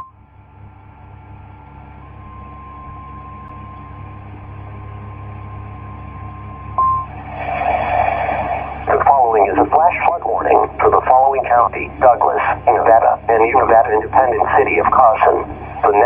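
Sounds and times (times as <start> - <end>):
low hum: 0.0 - 16.0
steady alarm beep: 6.8 - 7.2
radio noise: 7.4 - 16.0.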